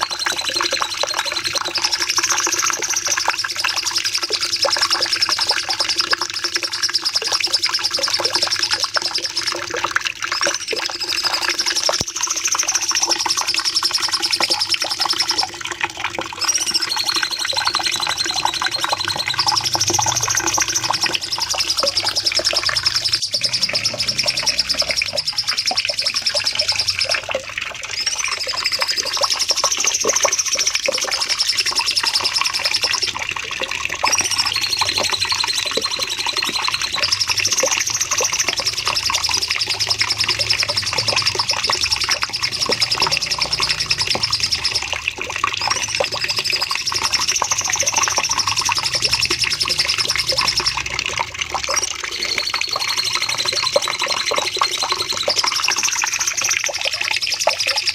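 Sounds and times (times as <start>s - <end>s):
quick ticking bird notes: 0.0s - 57.9s
bird singing rapid high trill: 16.4s - 27.3s, 28.0s - 33.0s, 34.1s - 45.0s, 45.6s - 51.0s, 51.7s - 56.6s.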